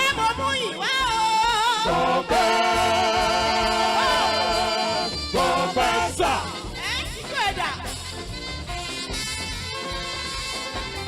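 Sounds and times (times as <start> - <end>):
person singing gospel: 0.0 - 6.8
band with steady beat: 0.0 - 11.0.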